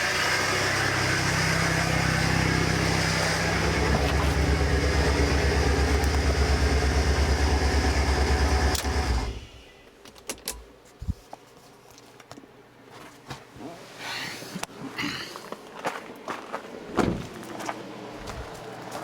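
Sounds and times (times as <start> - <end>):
car engine running: 0.0 - 9.6.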